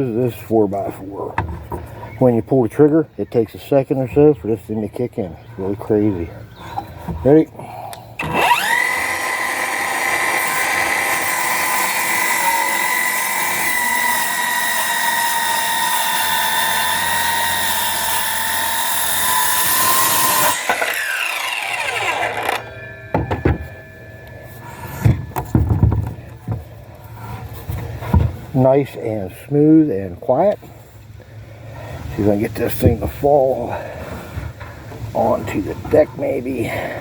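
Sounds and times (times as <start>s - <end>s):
saw blade spinning down: 8.2s - 25.1s
circular saw cutting wood: 8.2s - 25.6s
knocks: 23.1s - 23.8s, 25.0s - 26.6s.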